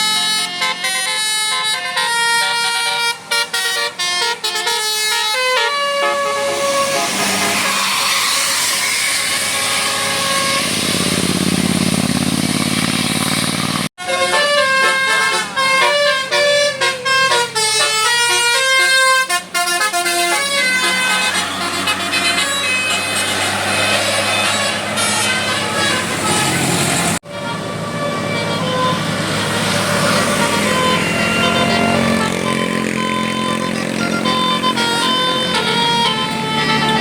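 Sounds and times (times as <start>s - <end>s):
musical air horn playing a tune: 0.0s - 11.3s, 14.0s - 37.0s
engine and road noise: 0.0s - 37.0s.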